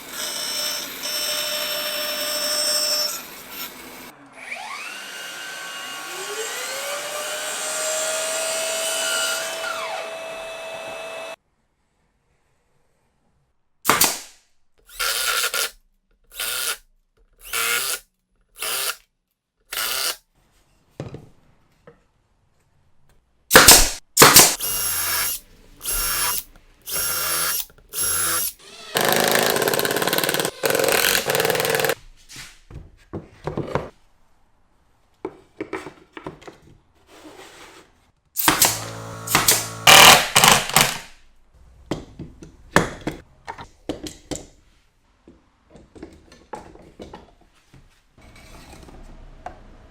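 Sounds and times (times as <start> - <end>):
power drill running: 9.2 - 11.4, 14.9 - 15.7, 16.3 - 16.8, 17.4 - 18.0, 18.6 - 19.0, 19.7 - 20.2, 23.5 - 32.0, 38.4 - 41.1.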